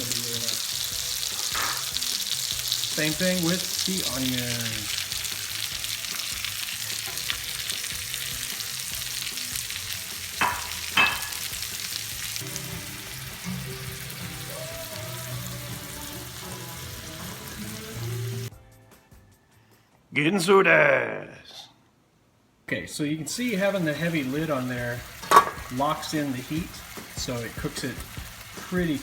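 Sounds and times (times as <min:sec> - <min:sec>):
food sizzling in a frying pan: 0:00.0 - 0:18.5, 0:23.3 - 0:29.0.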